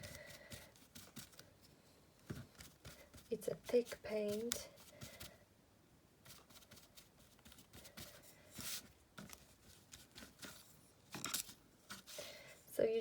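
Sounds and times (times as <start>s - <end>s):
paintbrush scratching on fabric: 6.2s - 10.6s.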